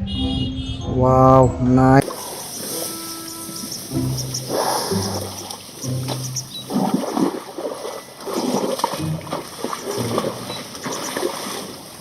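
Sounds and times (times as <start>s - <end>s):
water splashing and sloshing: 2.0s - 12.0s.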